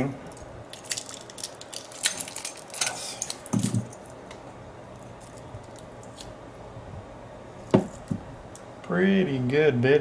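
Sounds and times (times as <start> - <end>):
keys jangling and clinking: 0.7 - 4.2.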